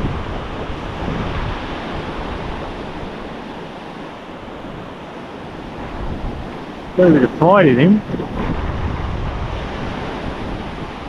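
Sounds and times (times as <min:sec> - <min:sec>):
surf breaking on a beach: 0:00.0 - 0:11.0
wind gusting on microphone: 0:00.0 - 0:11.0.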